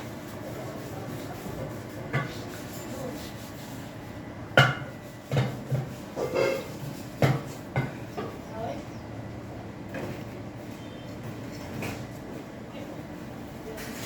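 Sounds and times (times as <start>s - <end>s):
dishes and pots clinking: 4.6s - 8.4s.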